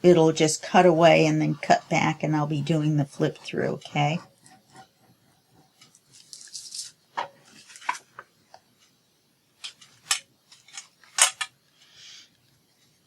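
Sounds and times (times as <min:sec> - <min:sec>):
paper rustling: 0:05.8 - 0:08.3.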